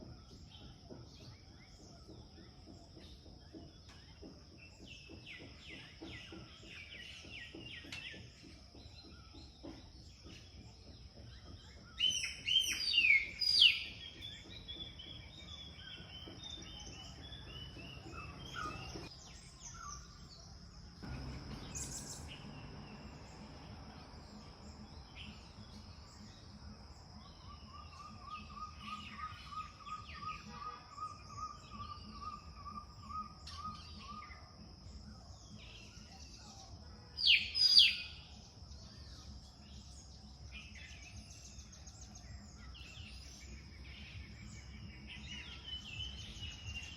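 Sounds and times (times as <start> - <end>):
birds calling: 0.0 - 46.9
loud sharp bird calls: 27.3 - 41.8.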